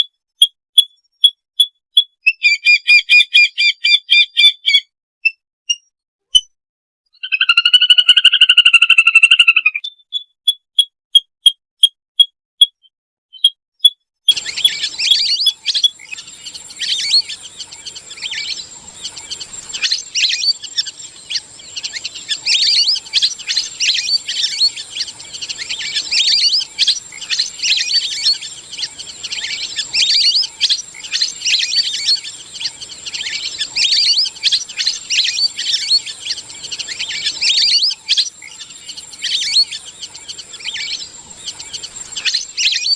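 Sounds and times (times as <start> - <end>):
ducks whistling calls: 14.3 - 42.9
flock chatter: 14.3 - 42.9
faint high whine: 14.4 - 42.4.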